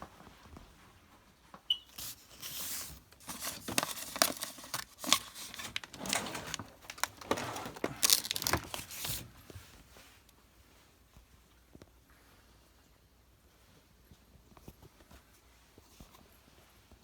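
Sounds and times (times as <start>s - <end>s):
crinkling and tearing: 2.0s - 9.3s.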